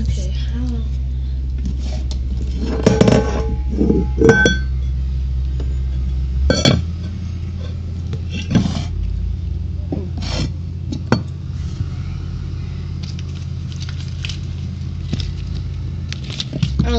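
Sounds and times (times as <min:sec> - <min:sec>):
low background hum: 0:00.0 - 0:16.9
kitchenware clinking and knocking: 0:02.7 - 0:04.7.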